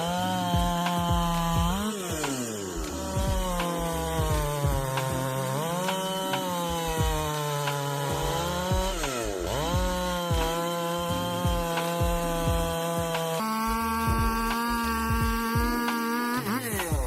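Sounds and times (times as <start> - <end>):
chainsaw cutting wood: 0.0 - 17.0.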